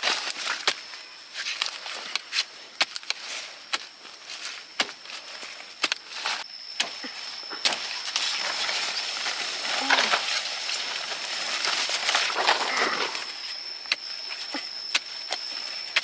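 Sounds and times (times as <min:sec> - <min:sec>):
tool chopping into soil and roots: 0:00.0 - 0:08.7
steady high-pitched whine: 0:00.0 - 0:16.0
rustling: 0:07.2 - 0:14.5.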